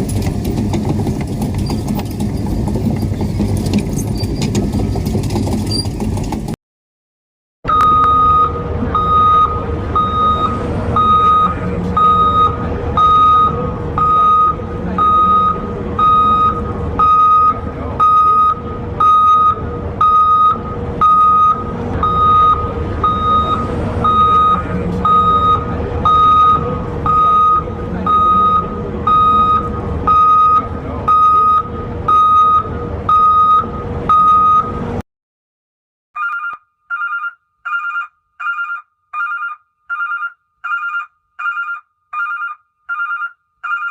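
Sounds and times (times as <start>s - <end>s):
diesel engine running: 0.0s - 6.6s, 7.7s - 35.0s
alarm beeping: 7.7s - 34.9s, 36.2s - 43.9s.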